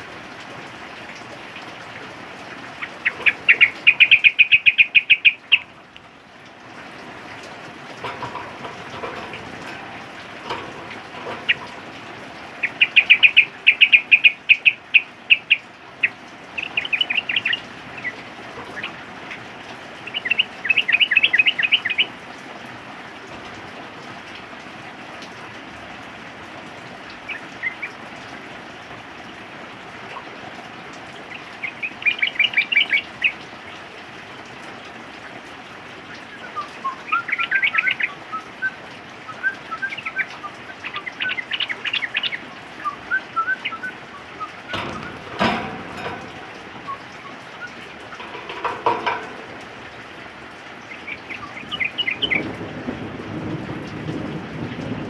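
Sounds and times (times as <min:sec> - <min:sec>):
rain hissing: 0:00.0 - 0:55.0
bird chattering: 0:02.8 - 0:05.7, 0:12.6 - 0:15.6, 0:50.9 - 0:52.4.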